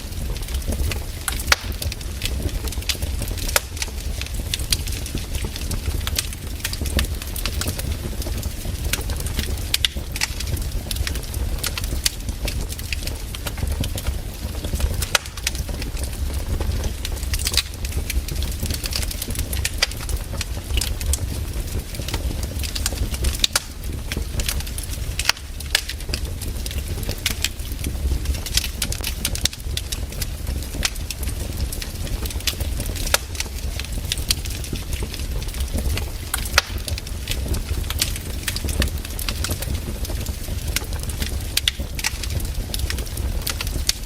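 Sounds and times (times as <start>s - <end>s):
firewood crackling: 0.0s - 44.0s
low steady fire rumble: 0.0s - 44.0s.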